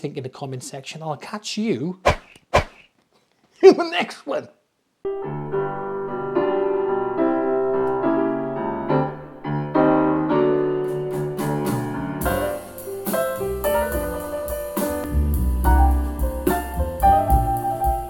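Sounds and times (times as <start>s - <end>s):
drums: 2.0s - 2.9s, 11.1s - 18.0s
bass: 8.4s - 18.0s.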